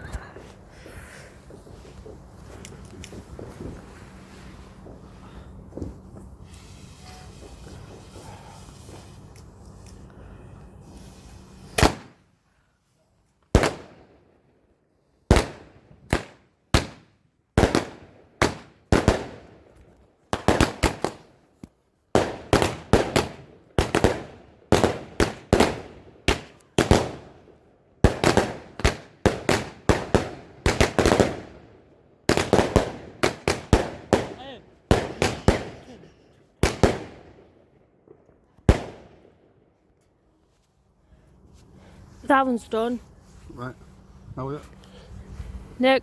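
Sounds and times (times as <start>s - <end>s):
firework bangs: 11.6s - 12.2s, 13.5s - 14.2s, 15.3s - 21.4s, 22.1s - 31.6s, 32.2s - 36.0s, 36.6s - 37.8s, 38.6s - 39.5s.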